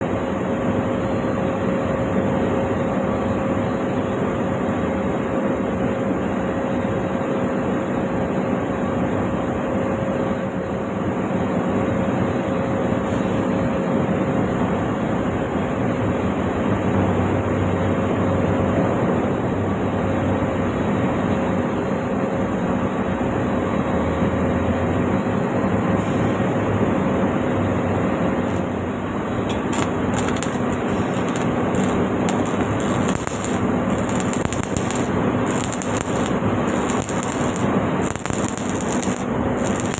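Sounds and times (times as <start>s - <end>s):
welding arc hissing: 28.4s - 39.9s.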